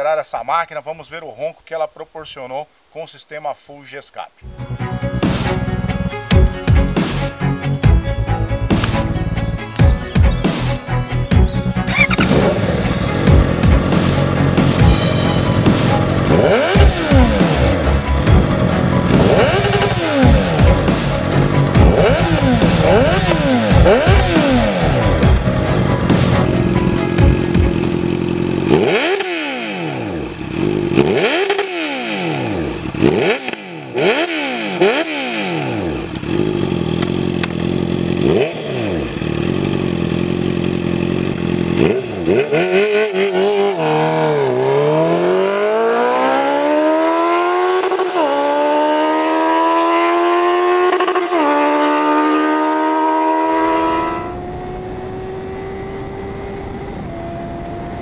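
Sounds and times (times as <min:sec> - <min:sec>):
motorcycle engine revving: 0:08.6 - 0:58.0
motorcycle accelerating hard: 0:11.8 - 0:58.0.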